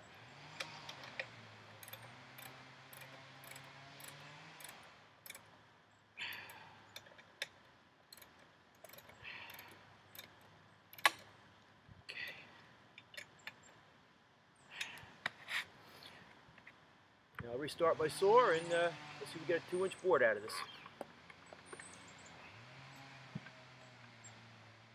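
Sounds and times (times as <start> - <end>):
metal clicks and scrapes: 0.5 - 5.5, 6.3 - 11.3, 13.0 - 13.8.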